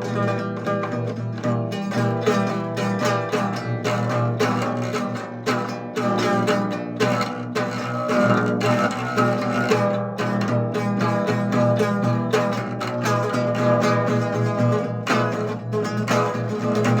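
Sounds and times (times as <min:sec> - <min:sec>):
plucked acoustic guitar music: 0:00.0 - 0:17.0.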